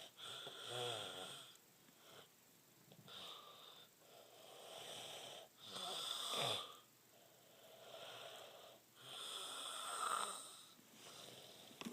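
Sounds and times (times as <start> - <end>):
quiet breathing: 0.0 - 11.9
person snoring: 4.4 - 6.8, 7.7 - 11.7.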